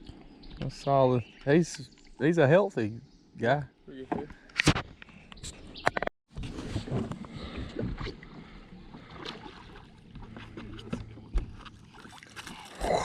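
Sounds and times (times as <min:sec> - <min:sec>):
knocks and bumps in boat: 0:06.3 - 0:12.2.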